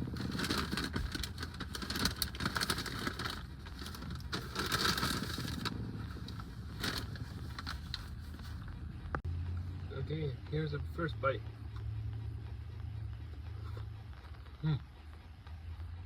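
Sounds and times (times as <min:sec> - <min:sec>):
wrapper rustling and crinkling: 0:00.0 - 0:08.6
steady low hum: 0:00.0 - 0:16.0.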